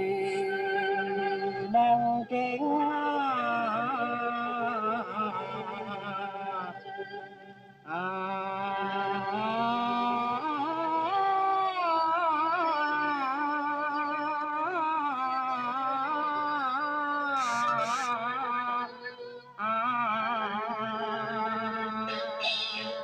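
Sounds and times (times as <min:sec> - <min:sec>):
song through a valve radio: 0:08.0 - 0:23.0.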